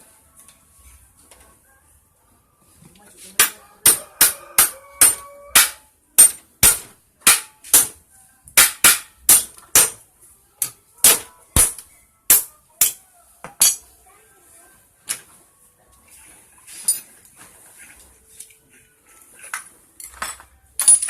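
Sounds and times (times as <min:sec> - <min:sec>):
hammer striking metal: 0:03.4 - 0:08.0, 0:08.6 - 0:10.0, 0:10.6 - 0:13.8.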